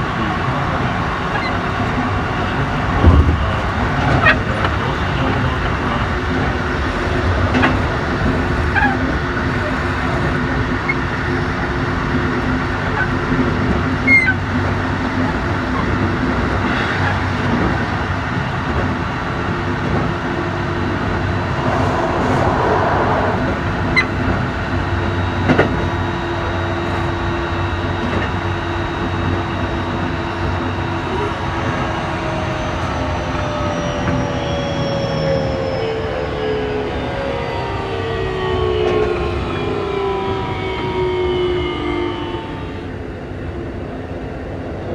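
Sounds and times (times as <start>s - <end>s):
train interior rumble: 0.0s - 34.4s.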